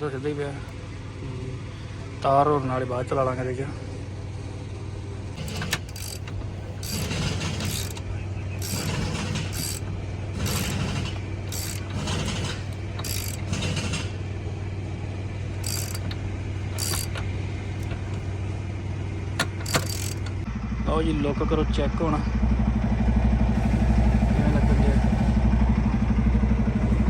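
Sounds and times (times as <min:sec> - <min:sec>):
hand ratchet clicking: 0:05.4 - 0:08.0, 0:08.6 - 0:14.0, 0:15.6 - 0:18.2, 0:19.4 - 0:20.5.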